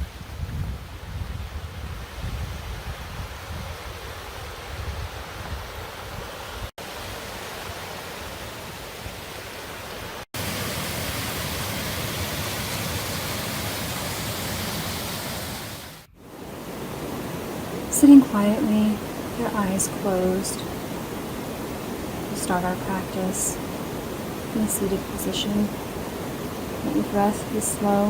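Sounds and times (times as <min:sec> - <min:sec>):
waterfall rushing: 0:06.8 - 0:28.0.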